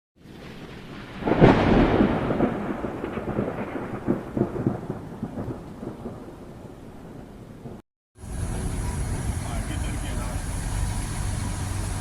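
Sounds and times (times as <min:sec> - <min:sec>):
thunder rumbling: 0:00.2 - 0:12.0
rain hissing: 0:08.2 - 0:12.0.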